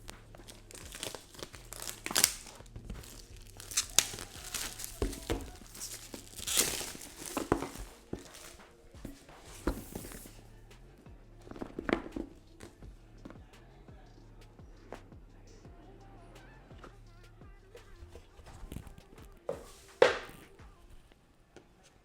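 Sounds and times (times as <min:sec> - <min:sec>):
packaging tearing and crinkling: 0:00.0 - 0:10.4.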